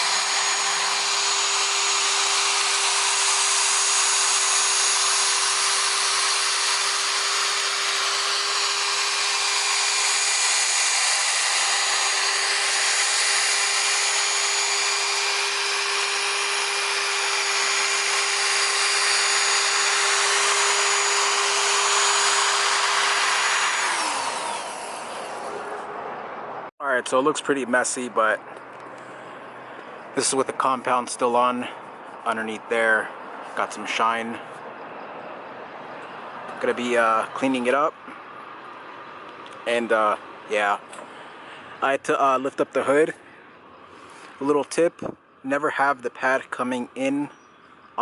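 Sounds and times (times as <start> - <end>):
electric polisher whining: 0.0 - 25.9.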